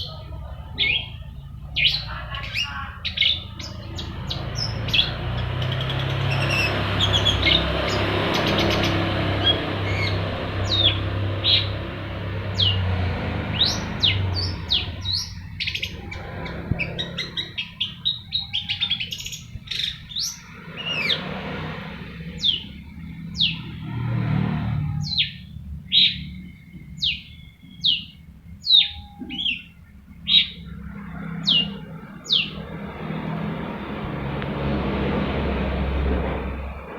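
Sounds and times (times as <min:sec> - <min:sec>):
low steady rumble: 0:00.0 - 0:36.9
shrike singing whistled notes: 0:12.6 - 0:21.2, 0:25.1 - 0:30.6.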